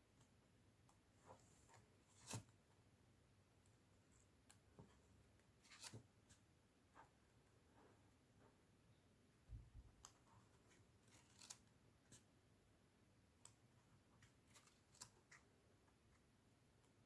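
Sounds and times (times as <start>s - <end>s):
photo book pages turning: 1.5s - 2.6s, 5.6s - 6.4s, 10.6s - 12.2s, 14.2s - 15.4s.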